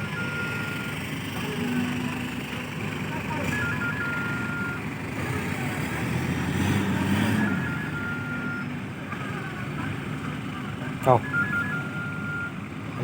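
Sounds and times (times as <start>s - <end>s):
two-tone reversing alarm: 0.0s - 2.4s, 3.3s - 4.9s, 6.6s - 8.8s, 11.0s - 12.6s
diesel truck engine revving: 0.0s - 13.0s.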